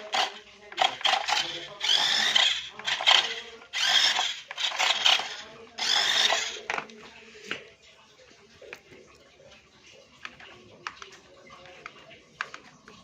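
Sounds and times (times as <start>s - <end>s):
toy car electric motor whirring: 0.0s - 6.8s.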